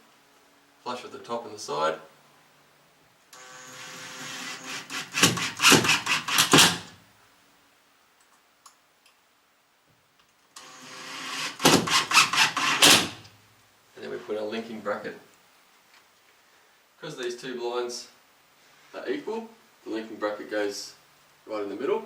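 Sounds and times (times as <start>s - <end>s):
power drill into timber: 3.4s - 7.0s, 10.6s - 13.2s
drill clutch clicking rapidly: 3.6s - 6.9s, 10.6s - 13.2s.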